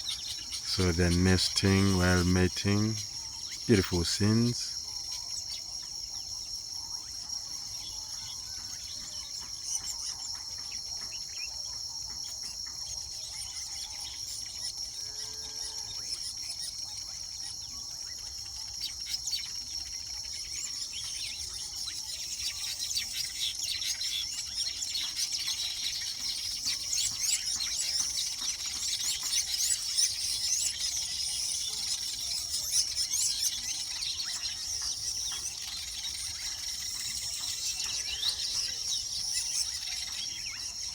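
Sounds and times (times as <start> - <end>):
weaver birds chattering: 18.3 - 40.9.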